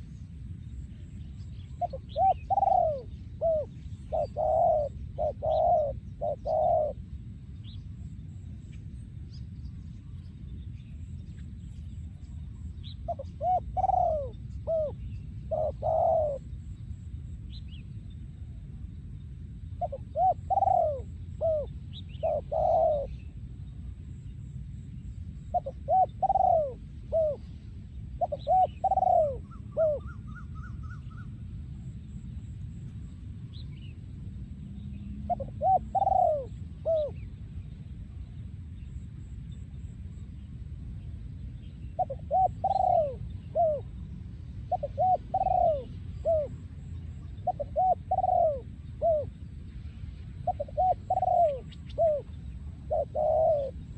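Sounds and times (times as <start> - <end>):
low background rumble: 0.0 - 53.9
dove cooing: 1.8 - 7.1, 13.0 - 16.5, 19.8 - 23.3, 25.5 - 27.6, 28.2 - 31.2, 35.2 - 37.3, 42.0 - 44.0, 44.7 - 49.3, 50.4 - 53.9.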